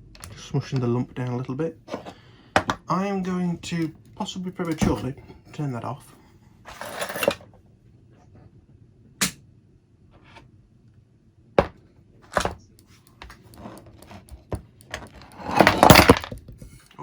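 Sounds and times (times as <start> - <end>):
small objects knocking on workbench: 1.9 - 2.9, 11.6 - 12.6, 13.2 - 16.8.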